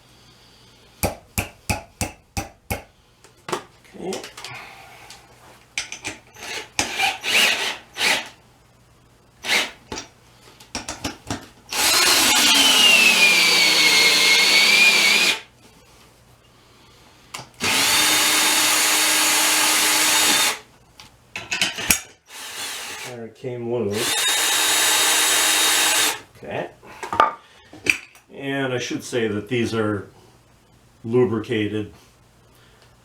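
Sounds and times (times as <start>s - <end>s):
cordless drill running: 6.3s - 8.4s, 9.4s - 9.8s, 11.7s - 15.5s, 17.6s - 20.6s, 22.3s - 23.1s, 23.9s - 26.2s.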